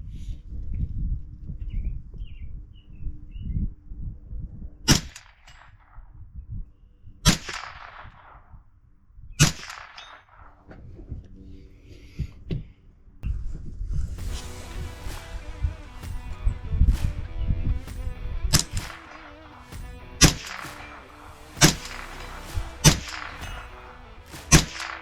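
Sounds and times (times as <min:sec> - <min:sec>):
rifle shots ringing: 0:07.3 - 0:08.5, 0:09.4 - 0:10.6, 0:14.3 - 0:25.0
guitar music: 0:14.2 - 0:25.0.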